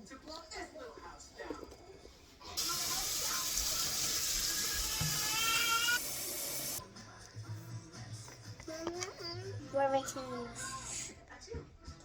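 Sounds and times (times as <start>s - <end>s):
tap water filling a container: 2.6s - 6.8s.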